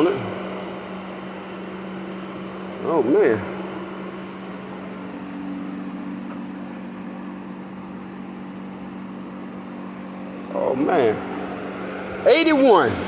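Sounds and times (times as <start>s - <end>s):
higher hum tone: 0.0s - 13.0s
low mechanical hum: 0.0s - 13.0s.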